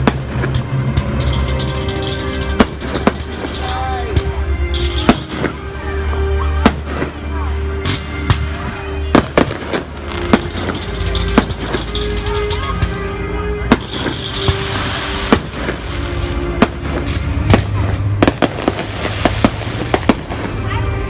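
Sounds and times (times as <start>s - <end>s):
firework bangs: 0.0s - 3.8s, 4.8s - 5.7s, 9.1s - 12.6s, 13.7s - 20.6s
music with long held notes: 0.0s - 21.0s
firework crackling burst: 13.7s - 20.6s.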